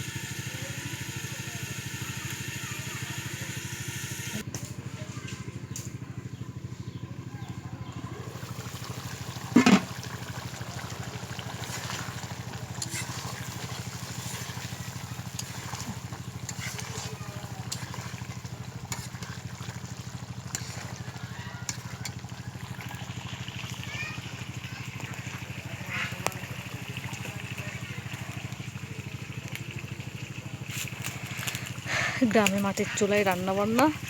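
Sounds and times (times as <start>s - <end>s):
pot bubbling: 0.0s - 4.4s, 7.9s - 34.0s
small fire crackles: 28.0s - 33.8s.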